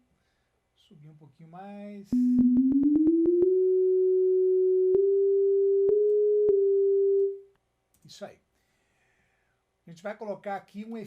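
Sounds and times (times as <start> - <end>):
sine-wave tone: 3.4 - 7.5.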